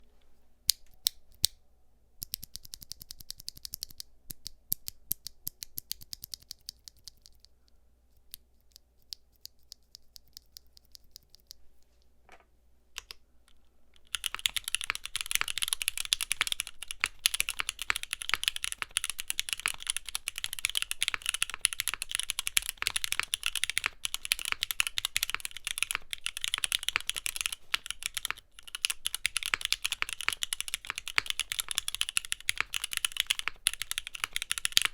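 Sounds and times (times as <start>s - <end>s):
mechanical keyboard typing: 2.2s - 7.5s, 14.0s - 34.9s.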